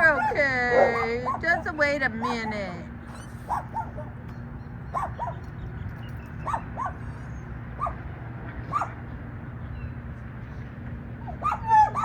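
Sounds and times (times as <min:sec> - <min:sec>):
small dog whining: 0:03.1 - 0:04.0.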